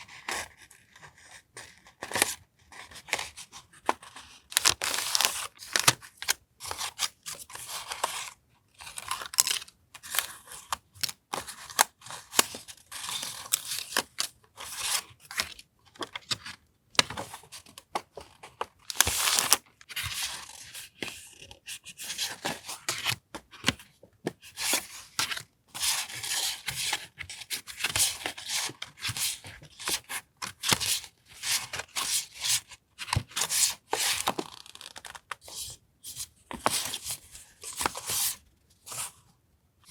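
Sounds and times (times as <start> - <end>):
paper rustling and crinkling: 3.9 - 23.8.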